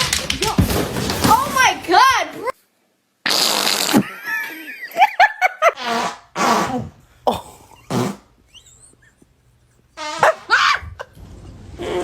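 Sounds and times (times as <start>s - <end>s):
fart: 3.2s - 4.2s, 5.8s - 7.0s, 7.9s - 8.3s, 10.0s - 10.5s, 11.7s - 12.0s
person laughing: 3.9s - 5.8s.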